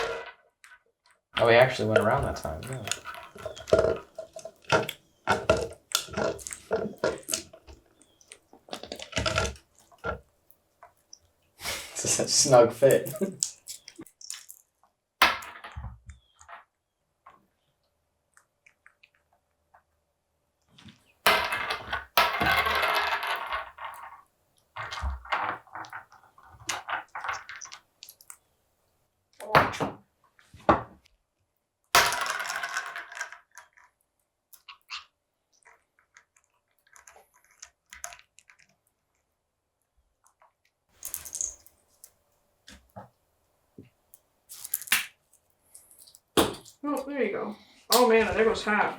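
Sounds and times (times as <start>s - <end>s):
rattling and scraping plastic bottle: 1.4s - 10.2s.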